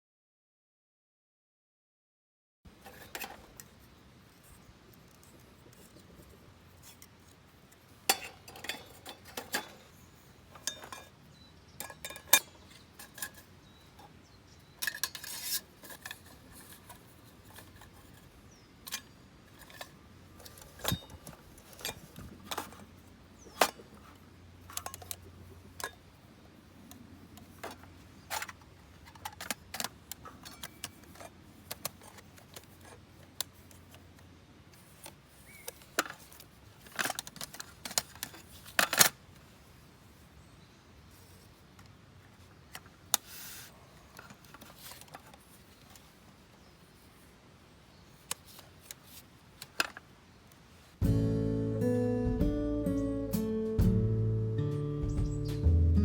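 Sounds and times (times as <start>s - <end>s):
pots and lids clinking: 10.6s - 11.1s, 11.8s - 13.5s.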